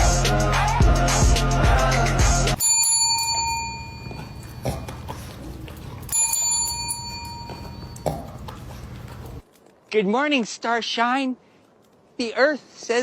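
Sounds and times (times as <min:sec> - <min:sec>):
background music: 0:00.0 - 0:02.8
small bell ringing: 0:02.6 - 0:05.0, 0:06.0 - 0:08.1.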